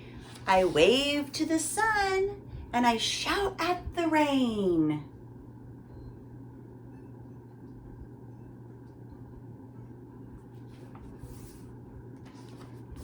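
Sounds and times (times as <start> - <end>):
steady low hum: 0.0 - 13.0
paper rustling: 10.5 - 13.0.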